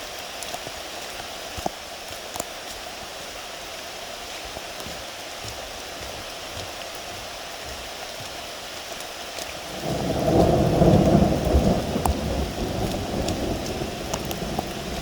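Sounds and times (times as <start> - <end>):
steady rain: 0.0 - 15.0
thunder rumble: 9.6 - 15.0.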